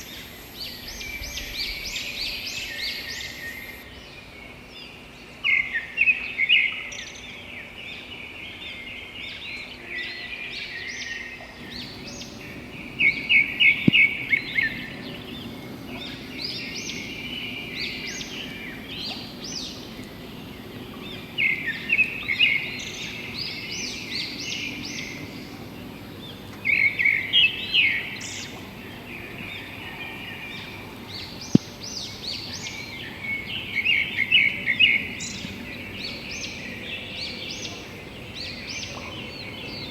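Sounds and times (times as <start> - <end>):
bird chirping loudly: 0.0 - 3.8
background birds: 0.0 - 5.0, 10.9 - 39.9.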